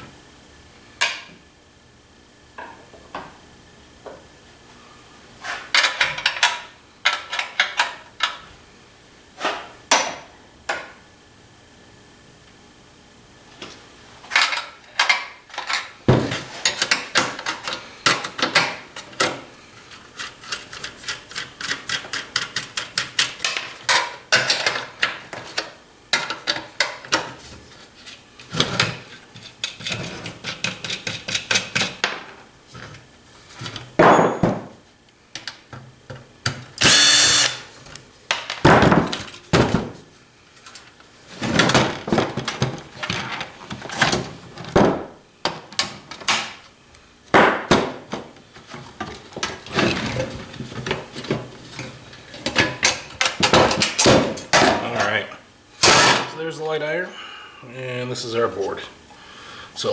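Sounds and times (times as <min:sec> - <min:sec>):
drill rapid clicking: 0:36.8 - 0:37.6
drill whir: 0:36.8 - 0:37.6.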